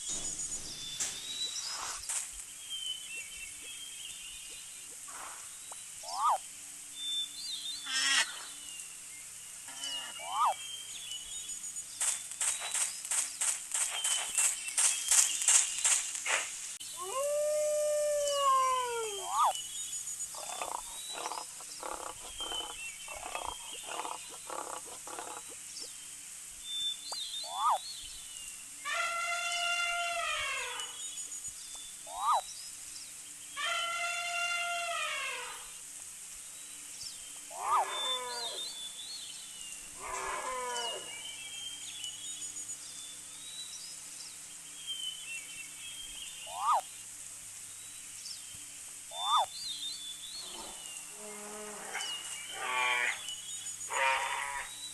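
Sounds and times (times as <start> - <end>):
small birds chirping: 0.0 - 28.8, 36.3 - 54.9
animal calling: 17.0 - 19.6, 37.5 - 38.8, 46.5 - 46.8, 49.1 - 49.5
animal calling in pulses: 37.5 - 38.6.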